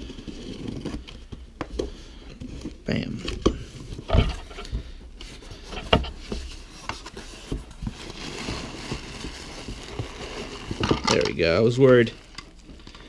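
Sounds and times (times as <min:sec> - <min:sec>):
cardboard rubbing scrape: 0:00.0 - 0:01.5, 0:02.4 - 0:10.8.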